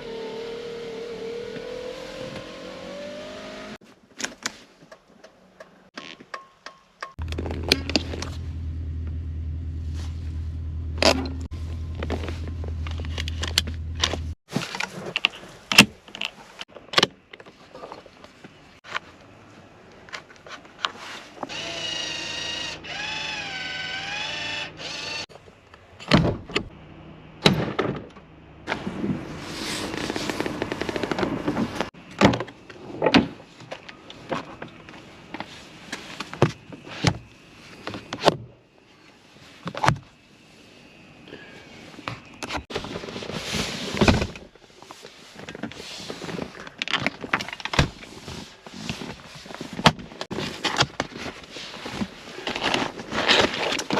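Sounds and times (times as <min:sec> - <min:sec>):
low steady hum: 0:07.2 - 0:14.4.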